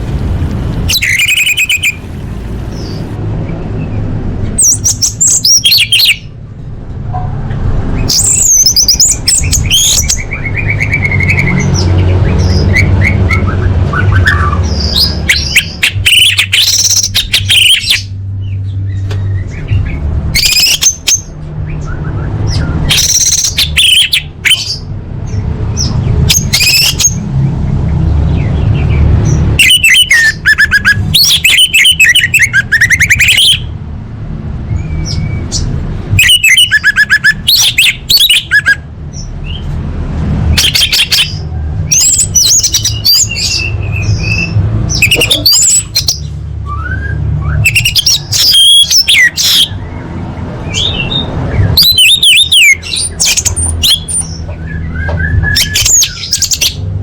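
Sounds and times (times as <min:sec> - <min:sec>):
thrush singing: 0:00.0 - 0:03.2
low rumble: 0:00.0 - 0:04.5.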